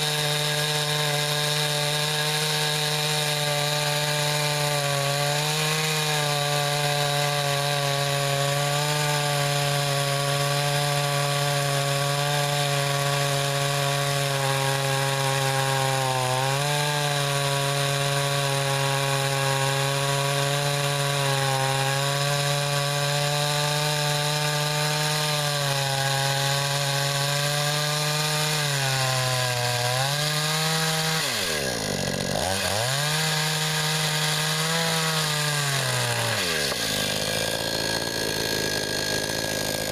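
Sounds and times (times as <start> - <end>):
chainsaw cutting through log: 0.0 - 39.9.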